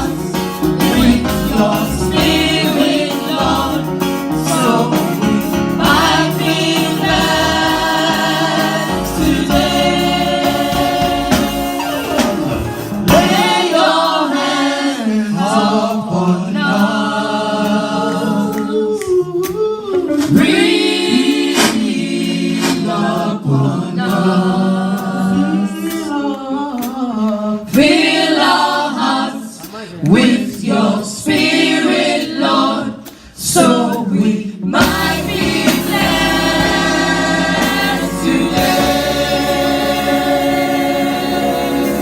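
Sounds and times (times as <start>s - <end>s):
choir singing a hymn: 0.0s - 18.9s, 20.0s - 42.0s
instruments with deep bass line: 34.8s - 42.0s.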